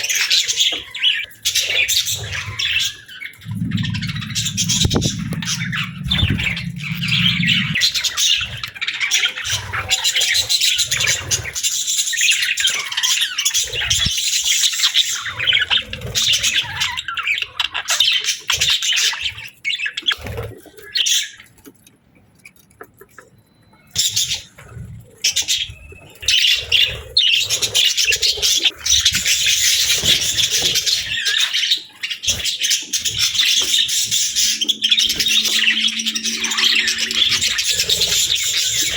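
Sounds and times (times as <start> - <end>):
low rumble: 3.4 - 7.9
budgerigars chattering and chirping: 25.3 - 38.9.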